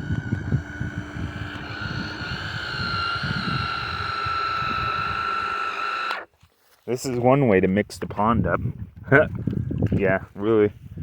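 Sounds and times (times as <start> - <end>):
wind buffeting microphone: 0.0 - 5.7, 7.5 - 11.0
small electric motor whining: 0.0 - 6.3.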